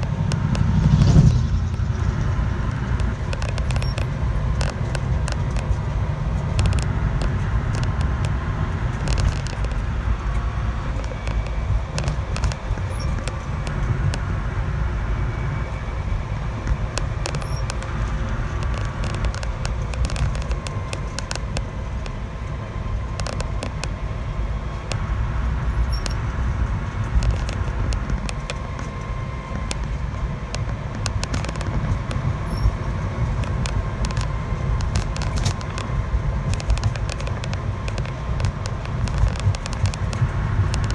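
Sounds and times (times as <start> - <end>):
sharp clicks and rattles: 0.0 - 40.9
vehicle engine rumbling: 0.0 - 40.9.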